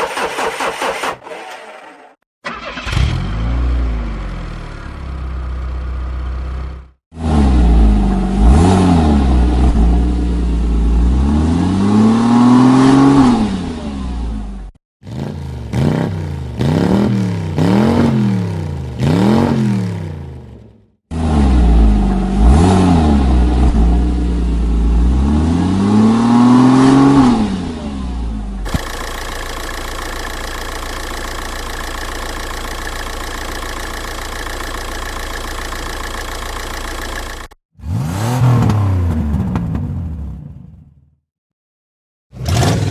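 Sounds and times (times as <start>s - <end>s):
car engine revving: 21.1s - 39.8s
car engine throttle blips: 28.3s - 39.9s
car engine idling: 28.6s - 37.6s.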